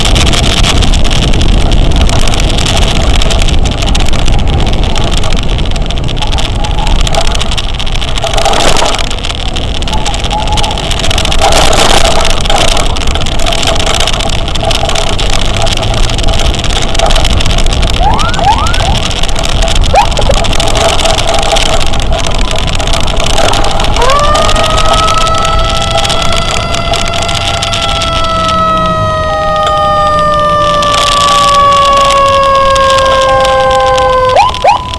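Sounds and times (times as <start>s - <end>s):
road and wind noise: 0.0s - 34.9s
siren: 6.2s - 7.5s, 9.8s - 14.1s, 17.8s - 20.6s, 21.5s - 34.9s.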